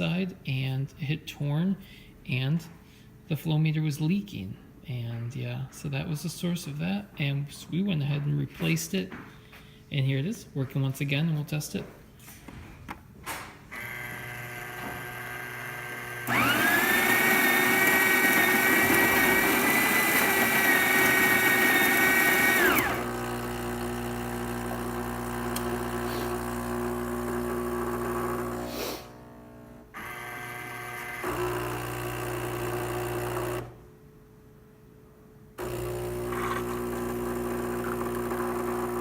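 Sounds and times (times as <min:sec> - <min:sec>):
machine hum: 0:13.7 - 0:33.8
coffee grinder whining: 0:13.8 - 0:33.7, 0:35.6 - 0:39.0.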